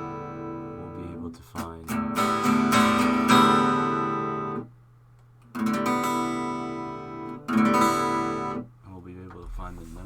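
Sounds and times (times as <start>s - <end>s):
guitar chords strummed: 0.0s - 4.7s, 5.5s - 8.7s.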